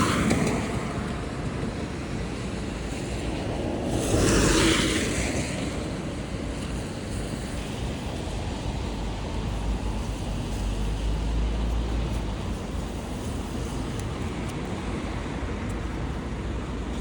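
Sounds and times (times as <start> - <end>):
traffic noise: 0.0 - 17.0.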